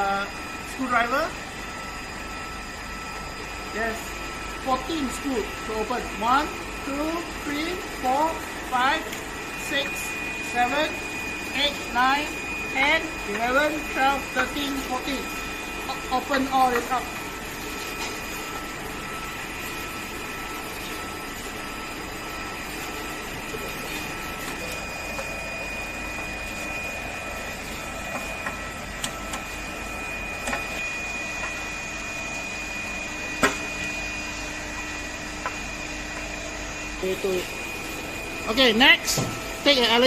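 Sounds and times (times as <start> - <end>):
steady mechanical hum: 0.0 - 40.0.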